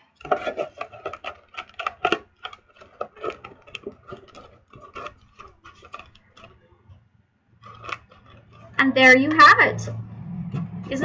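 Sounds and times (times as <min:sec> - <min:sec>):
cardstock box being folded: 0:00.1 - 0:06.6.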